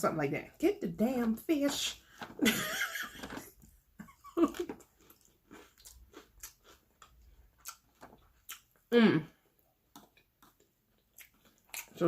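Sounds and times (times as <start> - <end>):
crunchy food crunching: 4.5 - 8.9, 9.9 - 12.0
wet chewing clicks: 4.5 - 8.9, 9.9 - 12.0.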